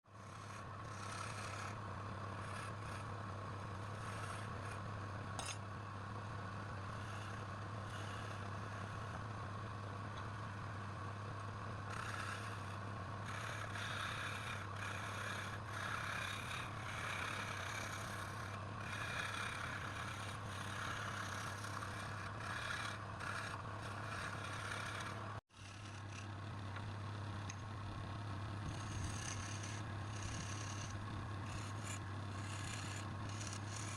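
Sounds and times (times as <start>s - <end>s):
turning tool cutting wood: 0.1s - 5.7s, 6.7s - 9.4s, 11.4s - 26.9s, 28.5s - 33.9s
lathe motor hum: 0.1s - 33.9s.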